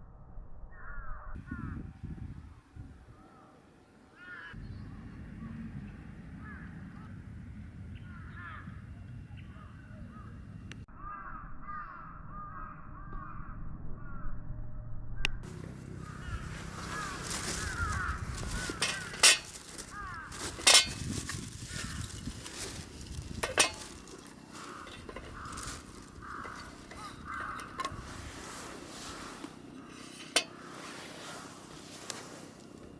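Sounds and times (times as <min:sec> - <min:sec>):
crows cawing: 0:04.2 - 0:04.6, 0:06.4 - 0:06.7, 0:08.1 - 0:08.8, 0:11.0 - 0:12.6, 0:15.6 - 0:32.5
steady low rumble: 0:04.6 - 0:10.9, 0:12.8 - 0:30.7.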